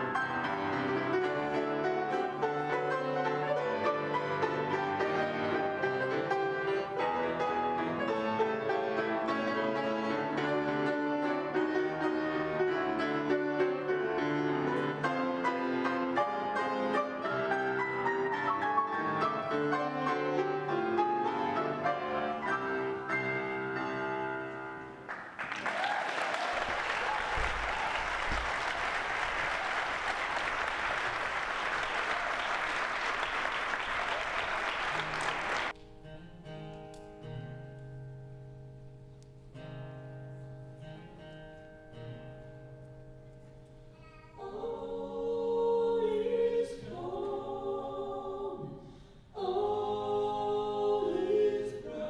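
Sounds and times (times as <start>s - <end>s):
piano music: 0.0s - 25.1s
audience applause: 25.1s - 35.7s.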